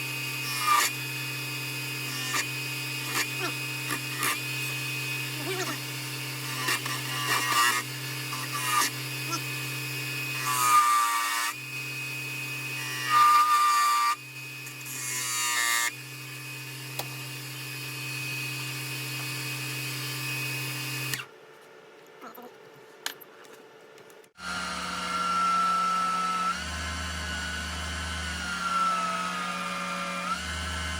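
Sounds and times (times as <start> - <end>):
wood lathe motor hum: 0.0 - 21.3, 24.4 - 30.9.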